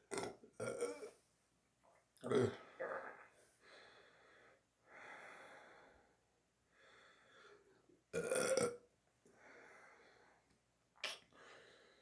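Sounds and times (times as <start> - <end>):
person burping loudly: 0.1 - 1.1, 2.2 - 3.2, 8.2 - 8.8.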